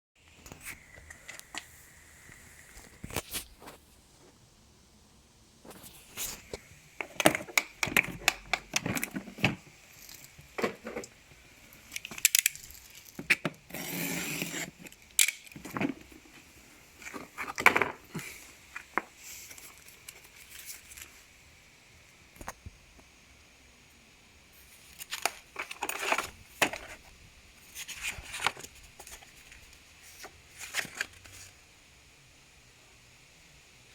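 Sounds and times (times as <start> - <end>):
packaging crinkling and rustling: 5.7 - 21.2, 24.6 - 31.6.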